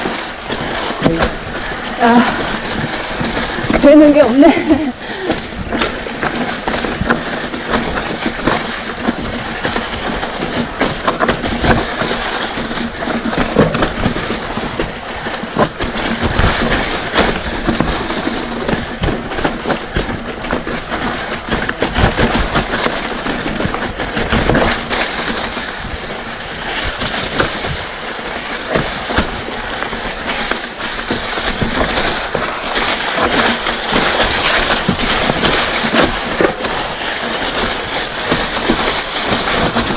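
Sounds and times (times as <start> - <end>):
bike rattling and knocking: 0.0 - 39.9
bike tyres grinding over dirt: 0.0 - 39.9.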